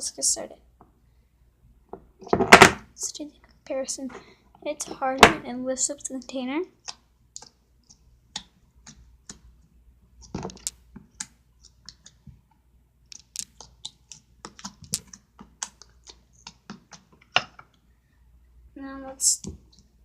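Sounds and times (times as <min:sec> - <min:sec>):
slime clicking in plastic containers: 0:10.2 - 0:12.2, 0:13.1 - 0:17.8.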